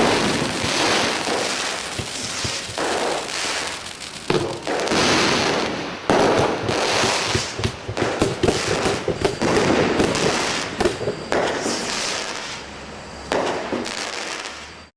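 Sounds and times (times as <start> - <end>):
fireworks bursting: 0.0 - 12.7
fireworks crackling: 0.0 - 12.7.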